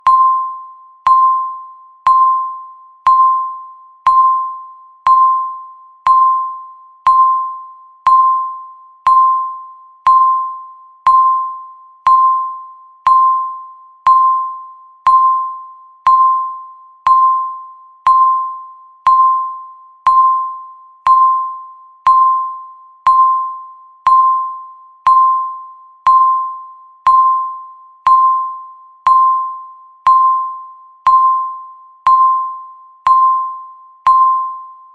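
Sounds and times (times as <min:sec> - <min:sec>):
timer ticking with ringing tone: 0:00.0 - 0:34.9.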